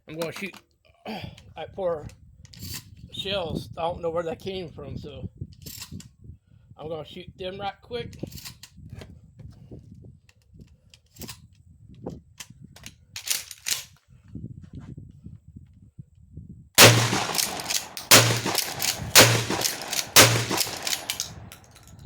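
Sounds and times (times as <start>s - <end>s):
gun handling clicks: 12.8s - 13.9s, 16.8s - 21.9s
shotgun shots: 16.8s - 21.6s.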